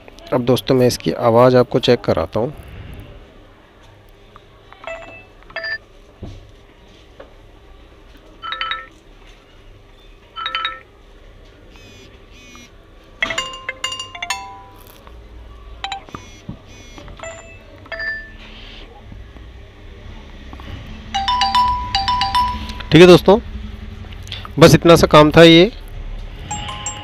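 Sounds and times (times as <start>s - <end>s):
phone speaker chime tones: 21.2s - 23.0s, 26.5s - 27.0s.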